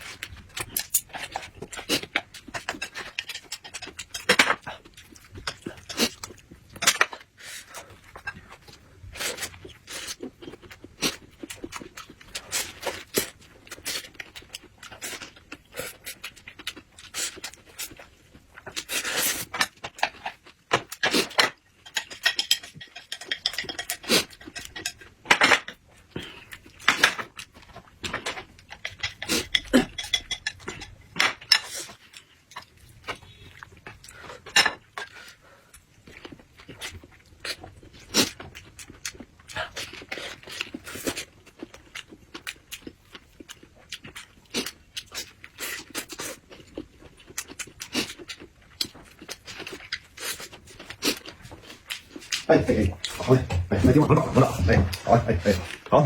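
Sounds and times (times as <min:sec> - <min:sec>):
chewing: 0:00.0 - 0:56.0
utensils clinking on dishes: 0:21.3 - 0:25.7, 0:28.8 - 0:31.9.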